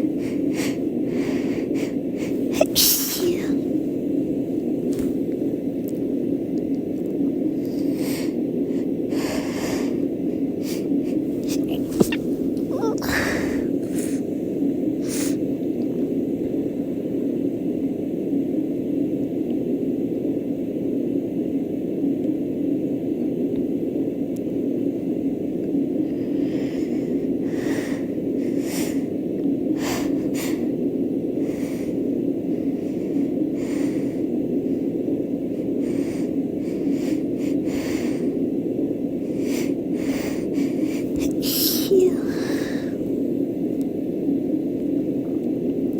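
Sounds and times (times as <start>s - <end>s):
woman sniffing: 0.1s - 3.7s, 10.6s - 14.3s, 39.3s - 43.0s.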